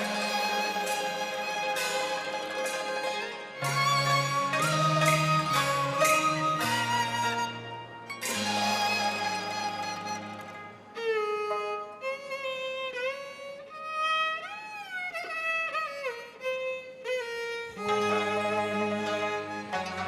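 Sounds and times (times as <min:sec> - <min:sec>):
opera ensemble playing: 0:00.0 - 0:12.3, 0:17.7 - 0:20.0
bowed string instrument melody: 0:00.0 - 0:20.0.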